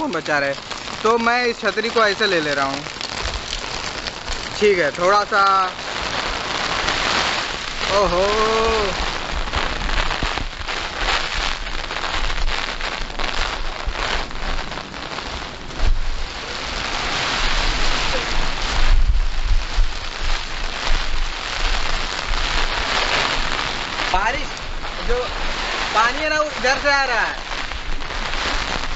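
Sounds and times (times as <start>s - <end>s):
heavy rain drumming on umbrella: 0.0s - 28.9s
wind buffeting microphone: 5.9s - 28.9s.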